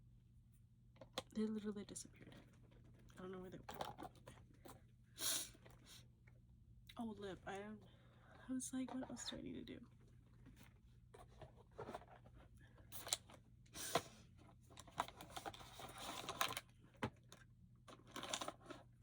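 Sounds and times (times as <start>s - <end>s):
rummaging rustling: 10.3s - 13.2s.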